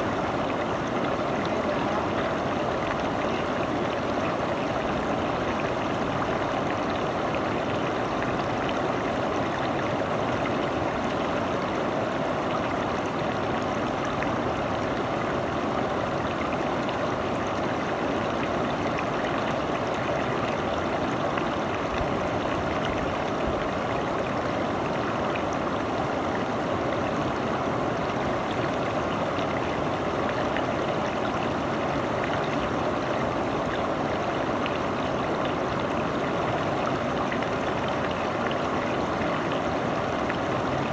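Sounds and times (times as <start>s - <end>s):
river water rushing: 24.1s - 40.9s.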